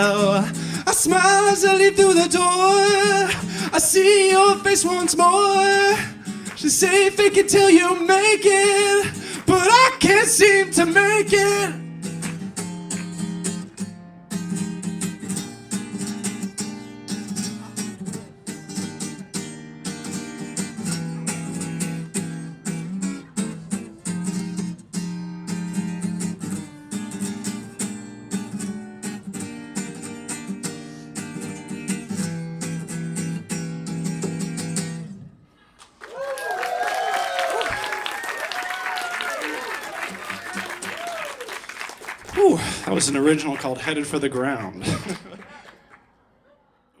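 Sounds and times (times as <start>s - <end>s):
acoustic guitar strumming: 0.0s - 35.6s.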